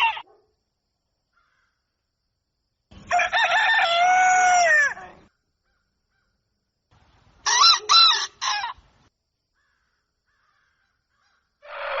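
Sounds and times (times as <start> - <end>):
rooster crowing: 3.0 - 5.2, 11.6 - 12.0.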